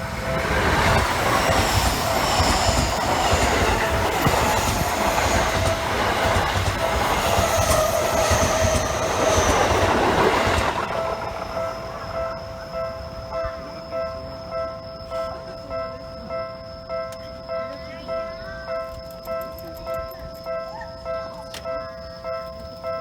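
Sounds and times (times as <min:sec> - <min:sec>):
high wheel squeal: 0:00.0 - 0:13.6
crossing warning bell ringing: 0:00.0 - 0:23.0
train wheels running on rails: 0:00.0 - 0:23.0.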